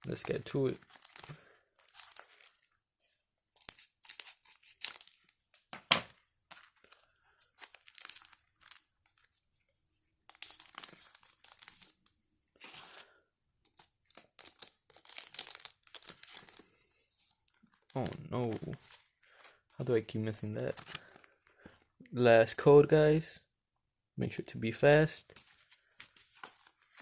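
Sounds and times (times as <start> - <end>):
foil wrapper tearing and crinkling: 0.8 - 2.7, 3.6 - 5.4, 6.5 - 8.9, 10.3 - 12.0, 13.7 - 16.8.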